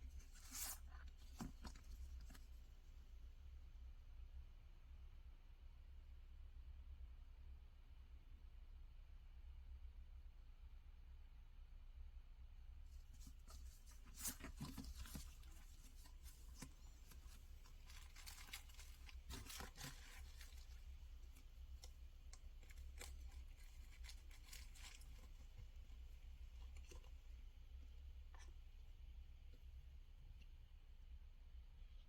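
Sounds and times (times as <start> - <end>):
low steady hum: 0.0 - 32.0
packaging rustling and tearing: 13.4 - 20.8, 22.6 - 25.4.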